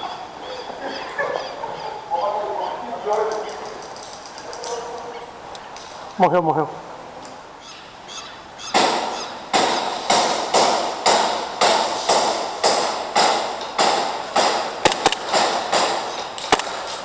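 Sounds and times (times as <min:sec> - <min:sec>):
short sharp cracks: 0:08.8 - 0:17.0.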